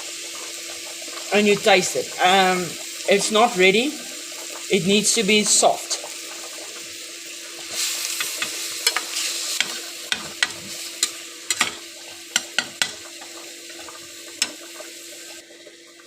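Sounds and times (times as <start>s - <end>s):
meat sizzling in a frying pan: 0.0s - 16.0s
spatula tapping and scraping pan: 8.2s - 13.3s.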